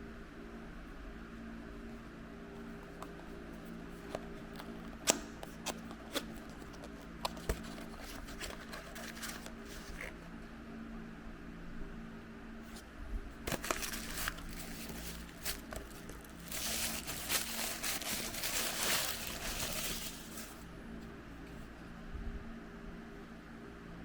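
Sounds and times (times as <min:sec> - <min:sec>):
plastic packaging crinkling: 0:04.0 - 0:10.2, 0:13.5 - 0:20.7.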